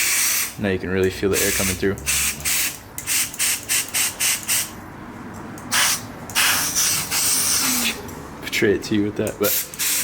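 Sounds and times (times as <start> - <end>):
compressed air sputtering bursts: 0.0 - 0.6, 1.3 - 4.8, 5.7 - 8.1, 9.4 - 10.0.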